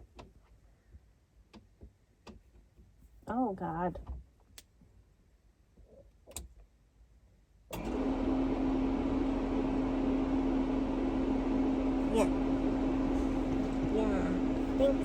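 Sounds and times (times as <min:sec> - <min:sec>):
furnace blower humming: 0:07.8 - 0:15.0.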